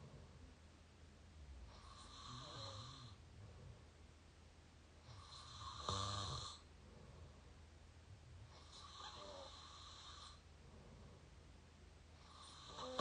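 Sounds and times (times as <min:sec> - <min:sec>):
person snoring: 0:01.7 - 0:03.2, 0:05.1 - 0:06.7, 0:08.6 - 0:10.4, 0:12.2 - 0:13.0
breathy breath: 0:06.6 - 0:07.6.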